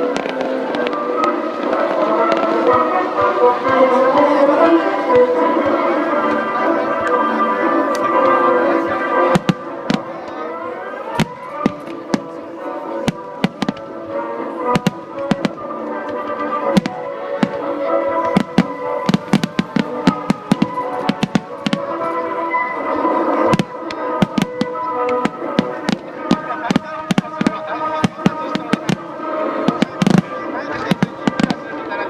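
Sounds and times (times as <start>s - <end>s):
background music: 0.0s - 32.0s
firework shells bursting: 18.3s - 22.1s.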